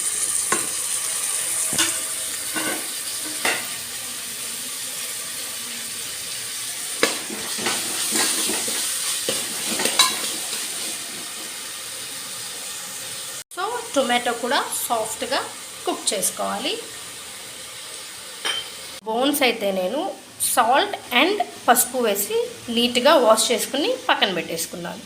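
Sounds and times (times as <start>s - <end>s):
vegetables sizzling in oil: 0.0s - 25.0s
spoon scraping pan: 7.0s - 11.6s.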